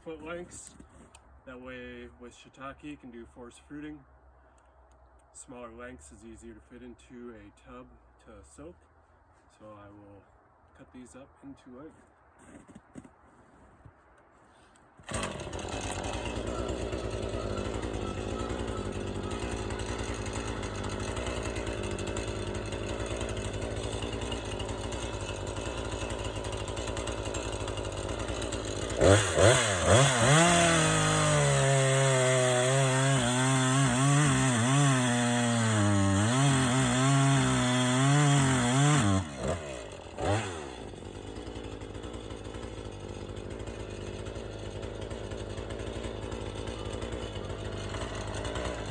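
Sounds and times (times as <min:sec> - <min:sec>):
chainsaw cutting log: 0:15.0 - 0:48.9
chainsaw idling and revving: 0:15.0 - 0:48.9.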